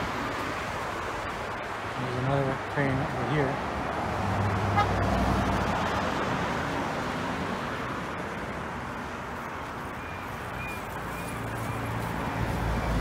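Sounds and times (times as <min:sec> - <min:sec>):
street traffic: 0:00.0 - 0:13.0
train passing: 0:03.5 - 0:13.0.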